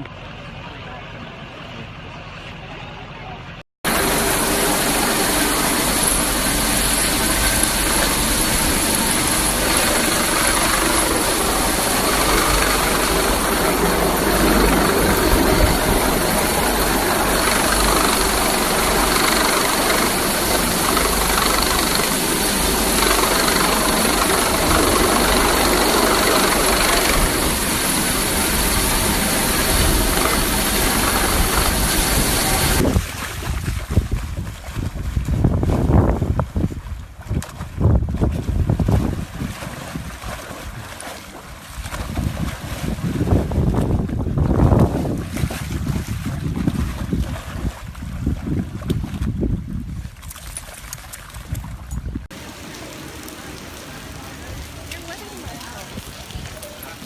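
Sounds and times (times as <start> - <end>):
faint high whine: 3.9 - 32.8
engine running: 3.9 - 33.0
heavy rushing noise: 3.9 - 33.5.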